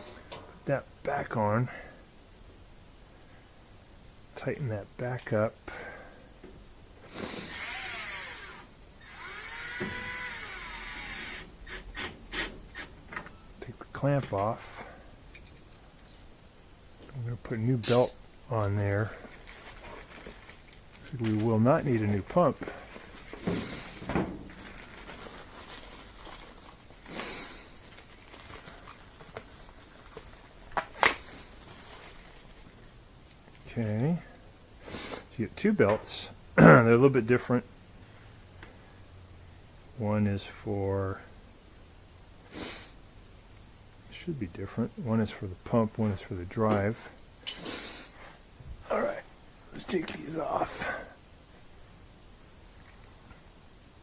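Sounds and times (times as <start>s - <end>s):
cordless drill motor whine: 7.2s - 11.5s
rustling: 18.9s - 33.7s.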